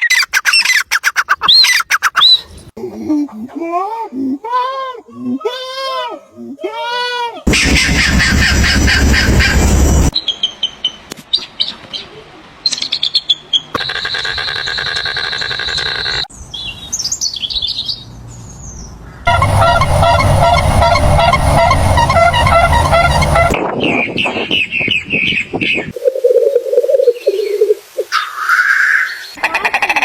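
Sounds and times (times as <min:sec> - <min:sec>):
fast chorus of chirps: 0:13.8 - 0:16.3
buzzy bird call: 0:19.3 - 0:23.6.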